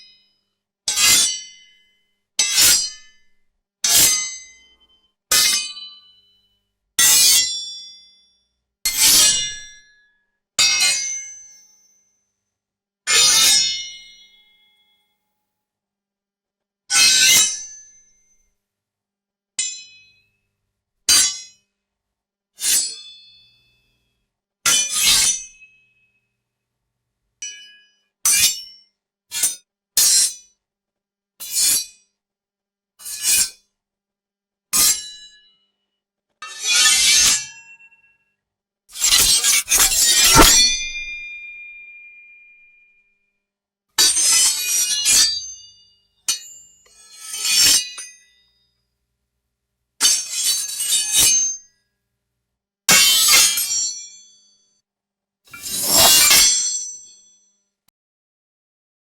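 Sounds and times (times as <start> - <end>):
sword blade clashes: 39.0 - 41.6, 55.6 - 56.5.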